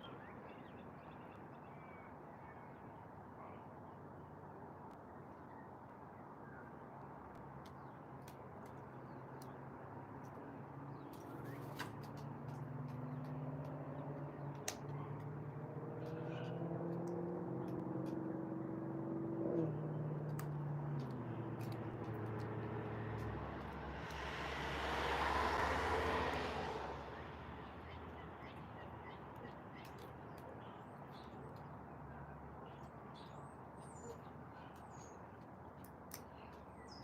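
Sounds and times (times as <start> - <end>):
tyre and road noise: 7.4 - 34.0
passing vehicle engine hum: 10.8 - 28.4.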